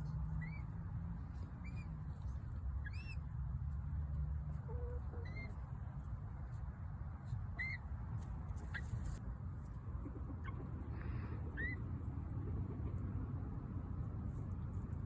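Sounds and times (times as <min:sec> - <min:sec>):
chick peeping: 0:04.7 - 0:05.6, 0:07.5 - 0:07.9.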